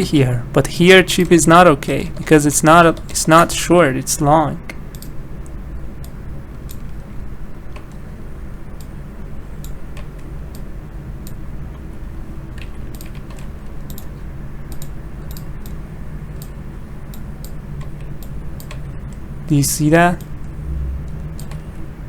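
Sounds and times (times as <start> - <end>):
steady low hum: 0.0 - 22.0
computer keyboard typing: 1.1 - 3.7, 12.5 - 15.8, 16.4 - 18.9, 21.4 - 21.8.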